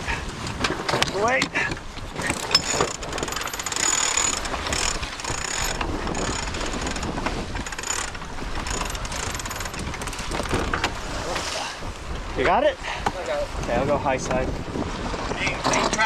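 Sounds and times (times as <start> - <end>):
winch ratcheting clicks: 1.0 - 11.0.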